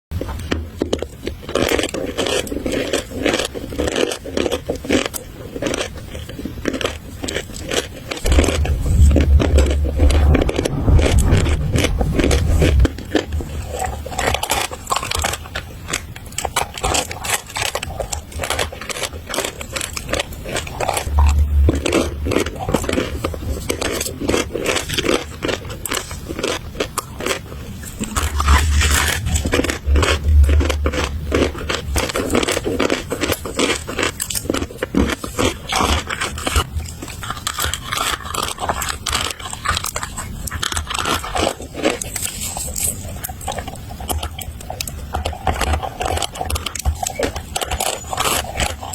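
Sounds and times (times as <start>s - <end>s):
chewing and crunching chalk: 0.2s - 48.9s
dull low thumps: 8.2s - 14.3s, 20.9s - 23.8s, 28.0s - 32.8s.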